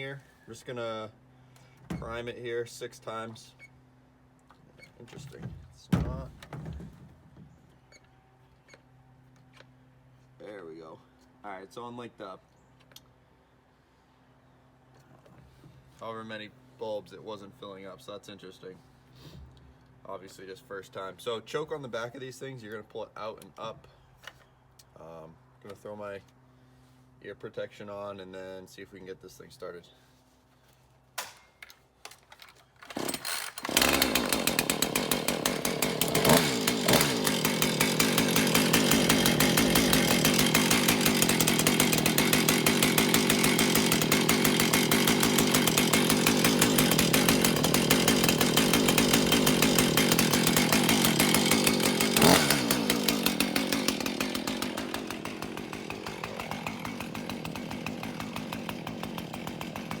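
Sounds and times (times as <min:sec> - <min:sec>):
starter cord tugs: 0:32.5 - 1:00.0
chainsaw engine running and idling: 0:32.9 - 1:00.0.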